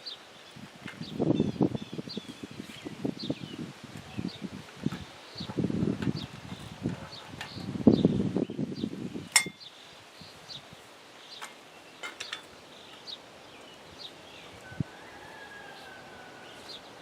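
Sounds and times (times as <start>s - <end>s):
metallic clink: 9.4s - 9.6s.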